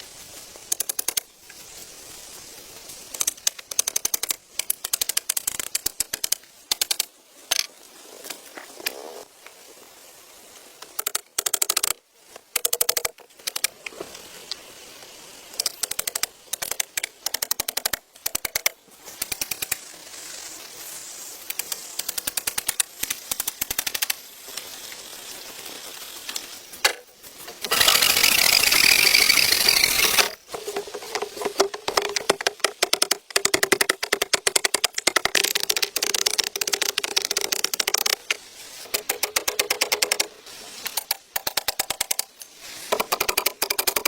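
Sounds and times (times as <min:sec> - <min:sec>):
loud rasping noise: 0:27.6 - 0:30.4
rapid sharp knocks: 0:31.1 - 0:38.2.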